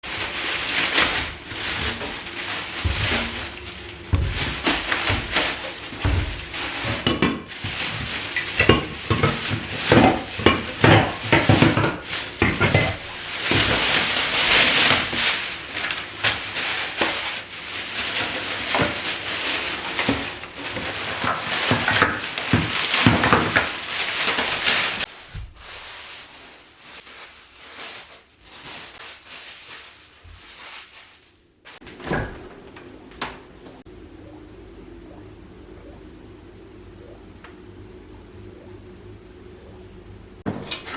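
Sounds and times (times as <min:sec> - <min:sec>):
knocks and clatters of items: 0:00.0 - 0:25.6
rustling packaging: 0:00.0 - 0:31.8
faint high whine: 0:33.9 - 0:40.4.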